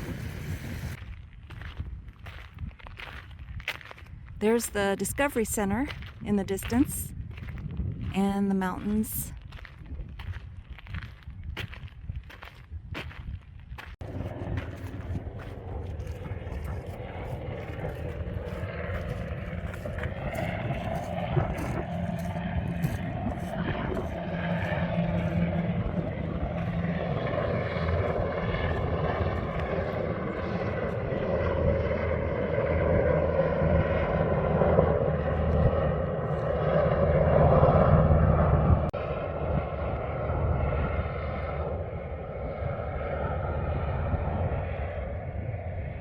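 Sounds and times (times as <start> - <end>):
engine drone: 0.0 - 1.0, 14.0 - 46.0.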